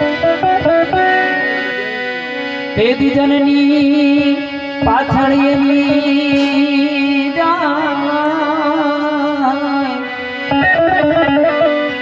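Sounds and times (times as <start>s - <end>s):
harmonium: 0.0s - 12.0s
man singing devotional song: 1.9s - 10.4s.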